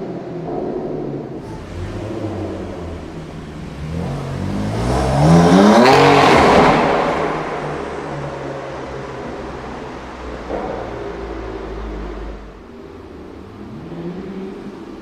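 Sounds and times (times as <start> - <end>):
car engine accelerating past: 1.4 - 12.6.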